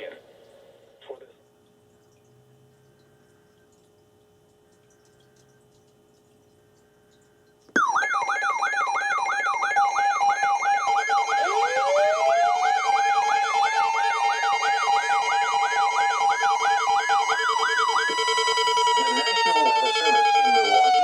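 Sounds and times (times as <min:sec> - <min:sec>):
siren wail: 0:07.8 - 0:21.0
siren yelp: 0:07.8 - 0:21.0.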